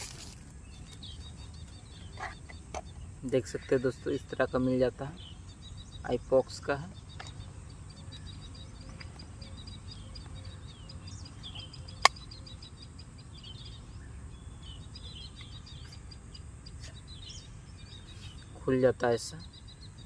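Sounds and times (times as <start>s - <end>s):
small birds chirping: 0.0s - 20.0s
sharp click: 12.0s - 12.2s.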